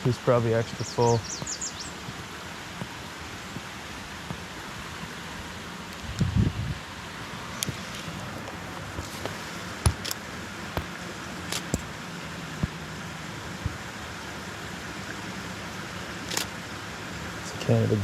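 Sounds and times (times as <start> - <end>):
creek rushing: 0.0 - 18.0
footsteps on trail: 1.2 - 12.0.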